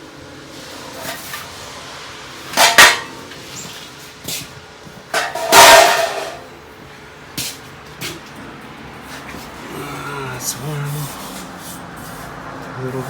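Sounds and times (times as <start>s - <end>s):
metallic clanks of tools: 5.2s - 6.5s.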